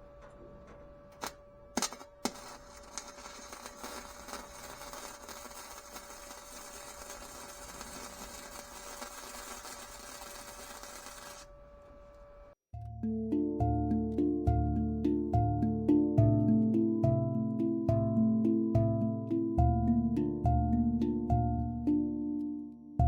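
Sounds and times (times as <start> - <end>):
welding arc crackling: 1.1 - 12.3.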